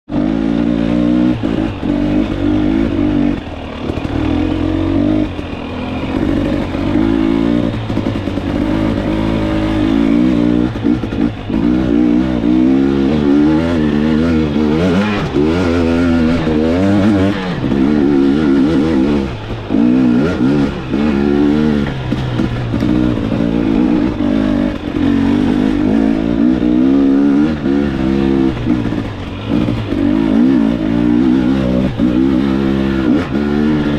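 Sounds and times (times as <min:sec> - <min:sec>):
dirt bike engine revving: 0:00.1 - 0:33.9.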